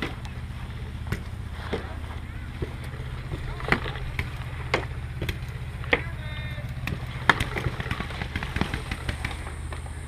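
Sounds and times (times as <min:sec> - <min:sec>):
steady low hum: 0:00.0 - 0:10.0
paintball markers firing: 0:06.8 - 0:09.5.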